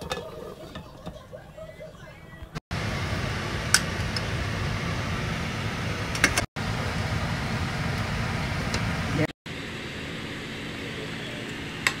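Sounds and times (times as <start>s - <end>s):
fan humming and rushing: 2.7s - 12.0s.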